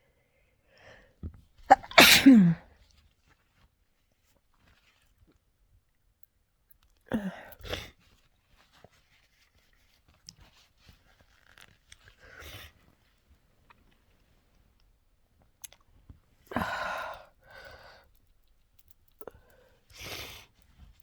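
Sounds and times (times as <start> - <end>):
person sniffing: 1.7 - 2.6.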